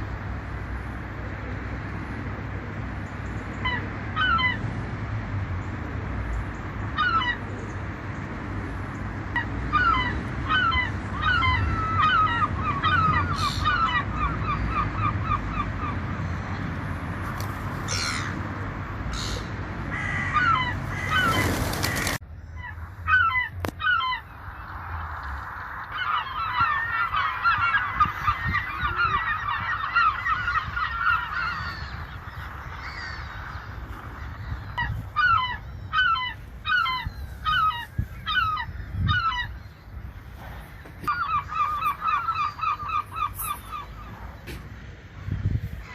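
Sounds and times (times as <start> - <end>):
gulls calling: 0.0 - 4.8, 5.4 - 45.9.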